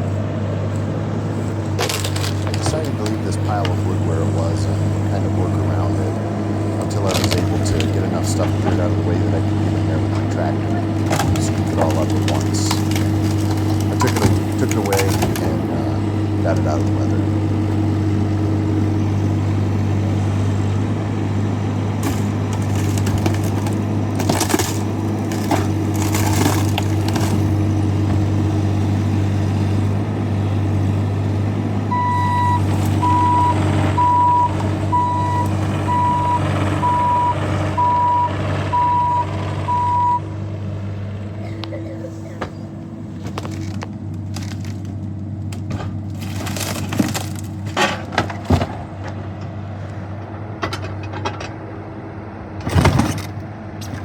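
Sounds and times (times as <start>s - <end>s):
diesel tractor engine running: 0.0s - 54.0s
knocks and clatters: 1.6s - 3.9s, 10.0s - 15.7s, 22.0s - 28.4s, 41.6s - 49.6s, 50.6s - 51.6s
warning indicator beeps: 31.9s - 40.2s.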